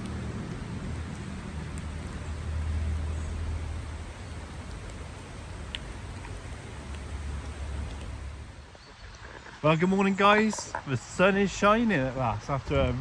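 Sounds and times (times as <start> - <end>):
low rumble: 12.6 - 13.0.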